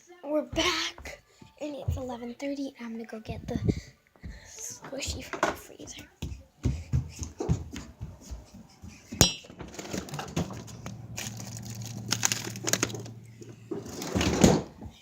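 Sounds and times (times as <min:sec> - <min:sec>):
sharp clink: 0:09.2 - 0:09.5
freezer humming: 0:09.2 - 0:14.8
clattering and crinkling: 0:09.2 - 0:15.0.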